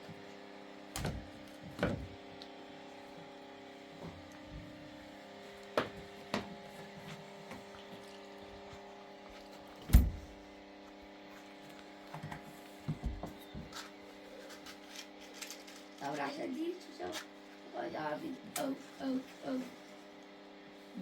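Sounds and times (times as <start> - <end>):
steady low hum: 0.9 - 11.1.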